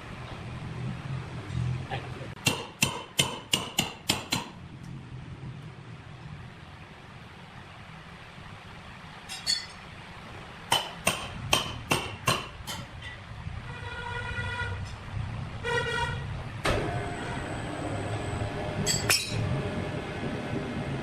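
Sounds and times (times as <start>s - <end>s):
low machinery hum: 4.4s - 21.0s
ringing metal clanks: 9.3s - 9.8s, 18.8s - 19.4s.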